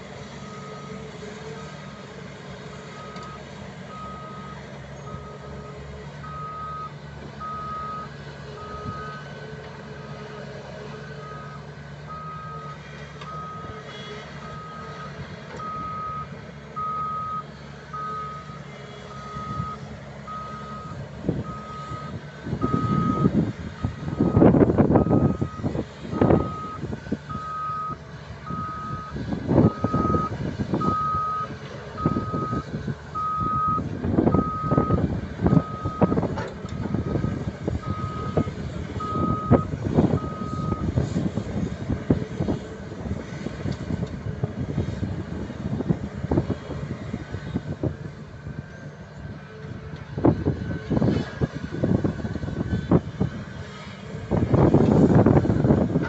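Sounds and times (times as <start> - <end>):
diesel engine running: 0.0 - 56.0
reversing alarm beeping: 6.2 - 9.2, 15.6 - 32.6, 33.2 - 36.2, 37.0 - 40.9.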